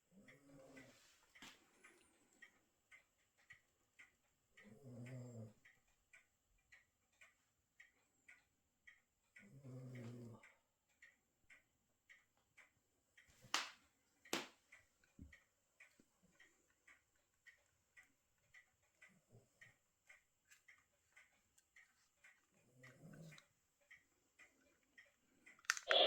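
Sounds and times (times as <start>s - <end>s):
faint regular ticking: 0.0s - 26.0s
sharp clicks: 25.5s - 26.0s.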